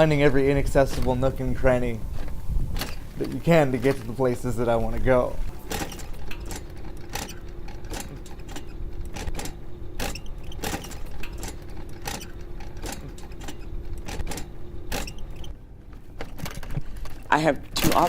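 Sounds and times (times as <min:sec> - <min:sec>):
scooter motor hum: 0:00.0 - 0:15.6
scooter knocks and rattles: 0:02.1 - 0:04.2, 0:05.5 - 0:15.5, 0:16.1 - 0:18.0.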